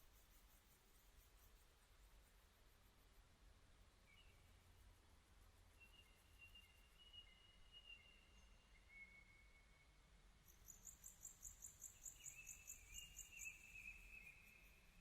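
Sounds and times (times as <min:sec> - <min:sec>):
insect chirping: 0:03.9 - 0:07.6, 0:10.5 - 0:15.0
whistled bird calls: 0:05.8 - 0:09.9.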